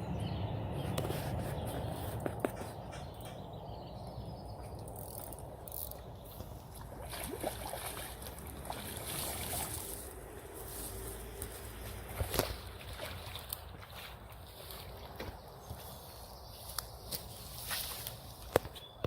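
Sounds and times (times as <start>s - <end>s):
faint water trickling and lapping: 4.2s - 18.8s.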